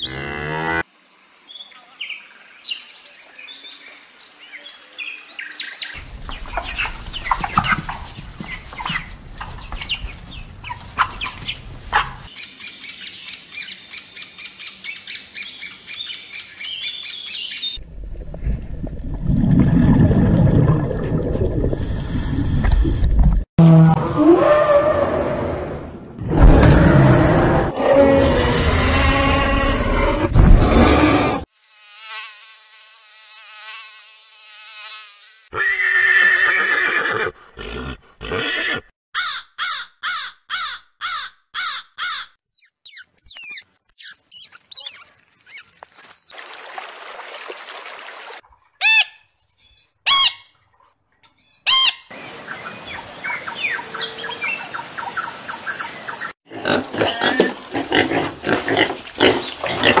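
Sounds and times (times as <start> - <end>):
high sweeping whistles and chirps: 42.4 - 45.0.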